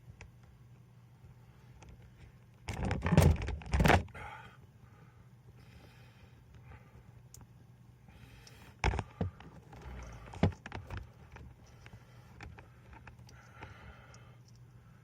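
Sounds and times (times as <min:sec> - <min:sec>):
steady low hum: 0:00.0 - 0:15.0
handling knocks and clicks: 0:08.8 - 0:13.7.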